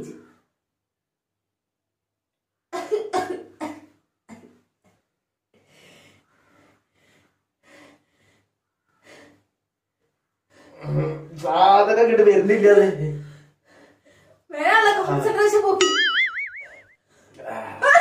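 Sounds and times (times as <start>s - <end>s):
faint breathing: 5.6s - 9.5s, 13.2s - 14.5s.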